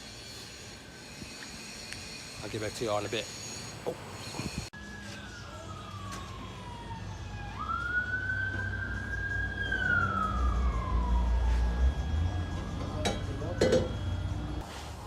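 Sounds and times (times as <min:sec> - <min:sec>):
siren wailing: 0:04.6 - 0:14.6.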